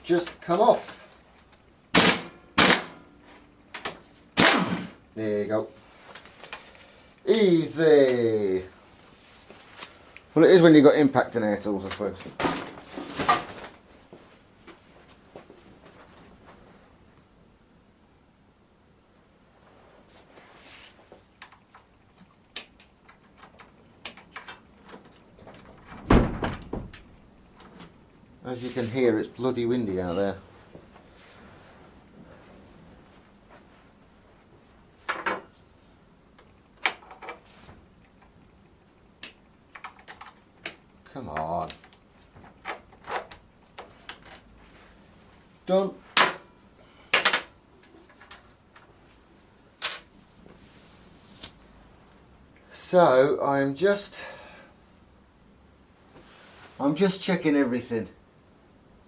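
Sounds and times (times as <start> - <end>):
tools and parts clacking: 49.8 - 50.1.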